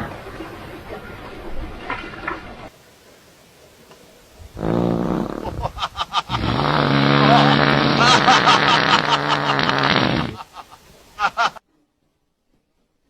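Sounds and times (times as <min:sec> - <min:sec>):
fart: 0:04.5 - 0:05.7, 0:06.3 - 0:10.4.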